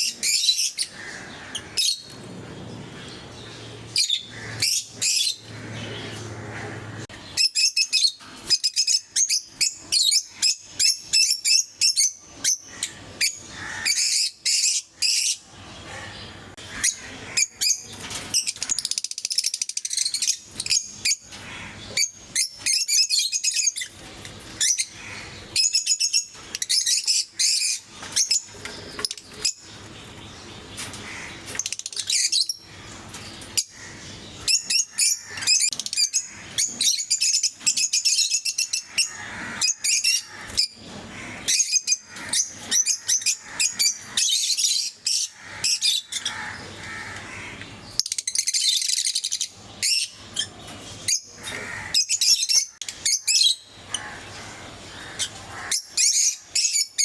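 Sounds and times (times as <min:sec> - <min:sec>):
lovebirds chirping: 0:00.0 - 0:57.0.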